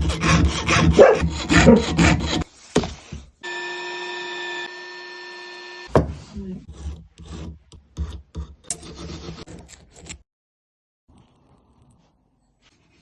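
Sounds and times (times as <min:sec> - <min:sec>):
file rasping on metal ring: 0:00.0 - 0:02.5, 0:06.6 - 0:09.5.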